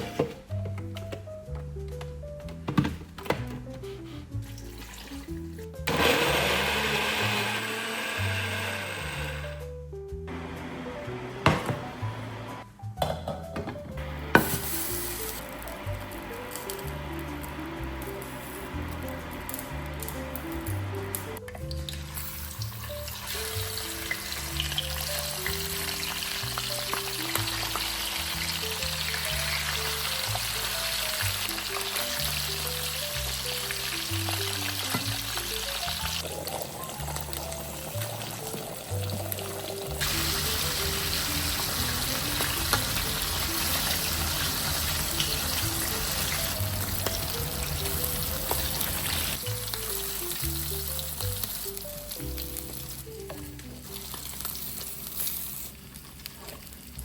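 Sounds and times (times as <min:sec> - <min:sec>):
soft background music: 0:00.0 - 0:57.0
food sizzling in a frying pan: 0:14.1 - 0:21.2, 0:21.8 - 0:57.0.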